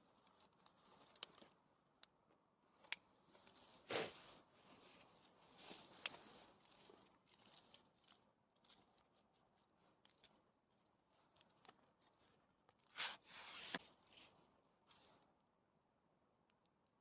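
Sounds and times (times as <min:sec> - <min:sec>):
crunching rustle: 0:03.2 - 0:12.4.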